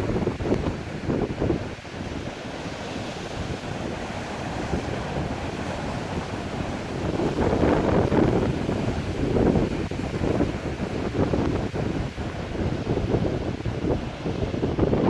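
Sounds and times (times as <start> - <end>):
breaking surf: 0.0 - 15.0
strong wind on microphone: 0.0 - 15.0.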